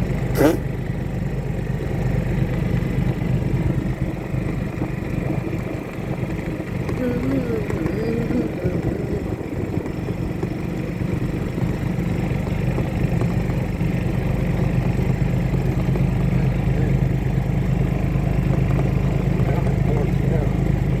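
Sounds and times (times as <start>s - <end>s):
golf cart motor droning: 0.0s - 21.0s.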